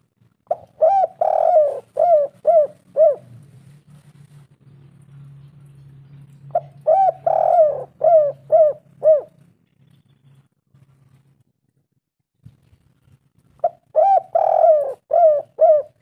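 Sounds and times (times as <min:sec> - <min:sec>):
dove cooing: 0:00.5 - 0:03.5, 0:06.5 - 0:09.4, 0:13.6 - 0:16.0.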